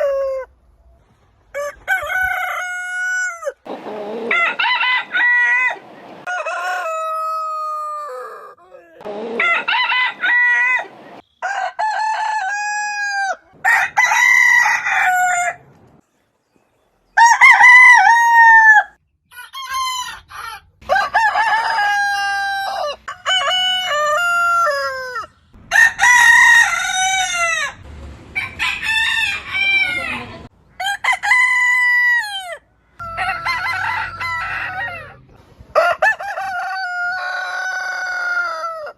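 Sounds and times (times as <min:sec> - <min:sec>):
roosters crowing: 0:00.0 - 0:00.6, 0:01.4 - 0:16.0, 0:17.2 - 0:38.9.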